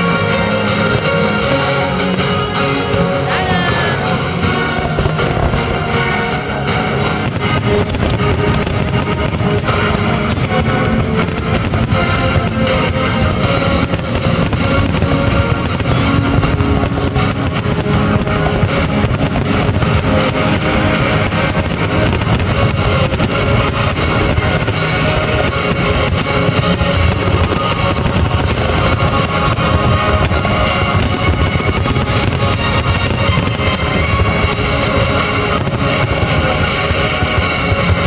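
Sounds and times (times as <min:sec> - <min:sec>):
fireworks bangs and crackle: 0:00.0 - 0:38.0
guitar-driven music: 0:00.0 - 0:38.0.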